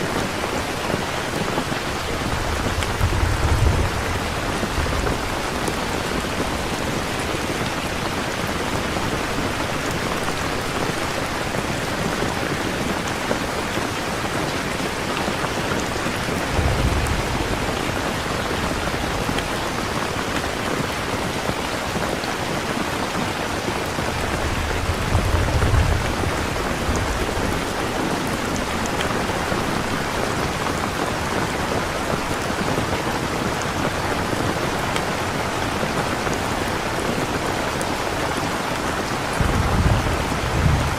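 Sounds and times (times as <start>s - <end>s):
steady rain falling: 0.0s - 40.9s
low thunder rumbles: 1.4s - 8.0s, 15.8s - 21.6s, 23.8s - 31.0s, 38.7s - 40.9s.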